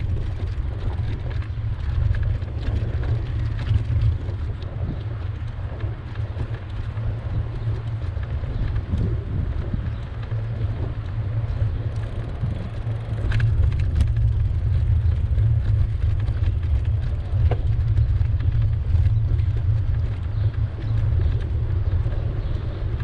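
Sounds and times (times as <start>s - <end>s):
wind rumble on microphone: 0.0s - 23.0s
small clicks: 0.1s - 23.0s.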